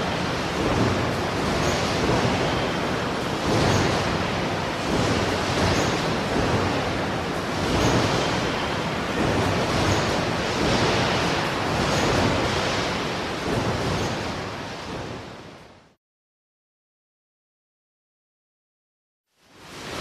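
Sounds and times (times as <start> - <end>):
factory machinery noise: 0.0 - 16.0.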